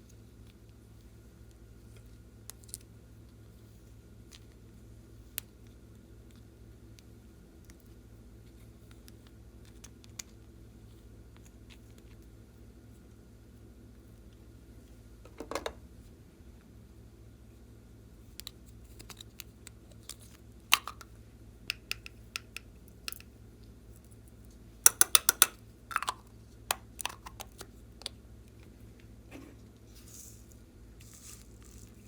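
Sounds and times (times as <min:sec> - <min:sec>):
slime clicking and popping: 0:24.9 - 0:27.6.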